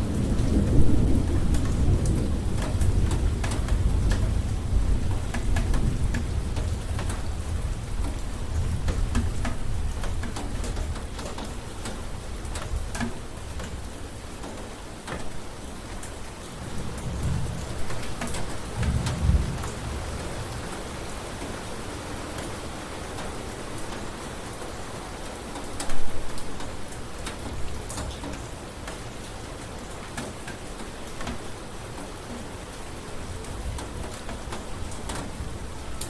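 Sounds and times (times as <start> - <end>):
thunder rumbling: 0.0 - 9.9, 16.6 - 21.4
rain drops ticking: 0.0 - 36.0.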